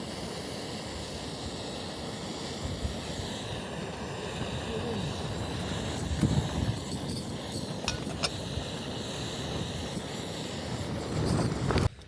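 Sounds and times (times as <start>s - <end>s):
wind blowing across microphone: 2.6s - 12.0s.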